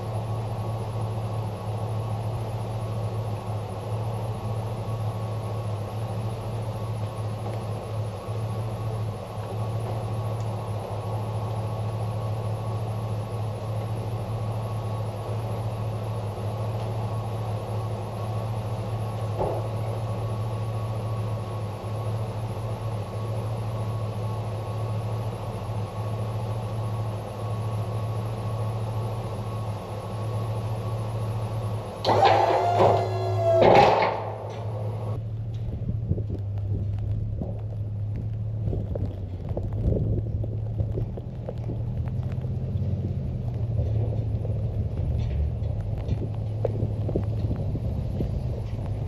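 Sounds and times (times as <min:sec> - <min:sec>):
pickup truck engine idling: 0:00.0 - 0:49.0
sudden loud sound: 0:32.1 - 0:34.5.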